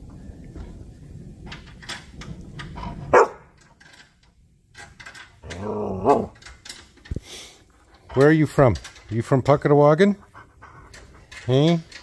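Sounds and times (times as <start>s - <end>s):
dog barking: 3.1s - 3.5s.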